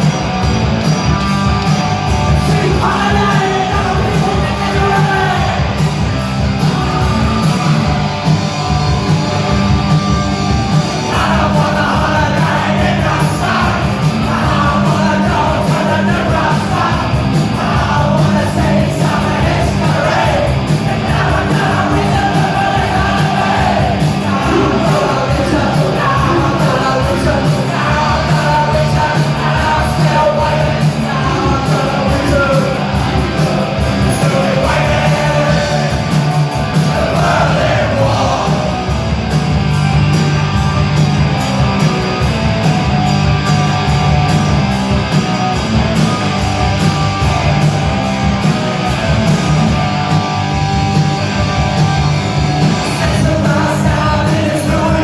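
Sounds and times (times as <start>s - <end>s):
punk rock band playing: 0.0s - 55.0s
shouted lead vocal: 2.3s - 8.0s, 11.0s - 39.1s.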